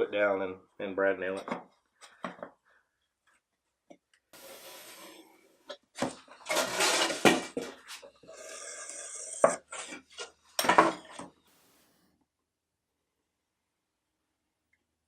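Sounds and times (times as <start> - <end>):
wood strips scraping and hissing: 4.4 - 5.5, 6.4 - 10.3.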